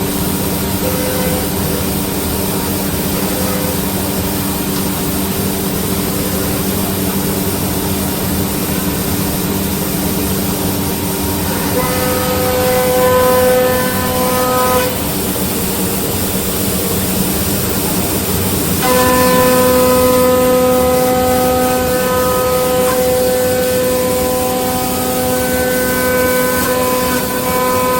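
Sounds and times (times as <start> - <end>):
high machine whine: 0.0 - 27.9
router spindle hum: 17.6 - 27.9.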